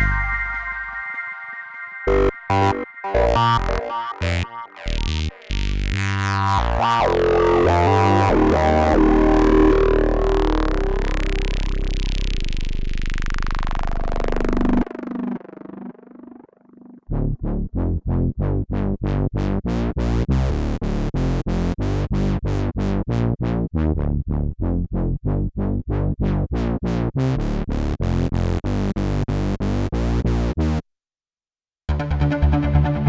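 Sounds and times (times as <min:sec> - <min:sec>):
synthesizer staccato sequence: 0:00.0 - 0:12.5.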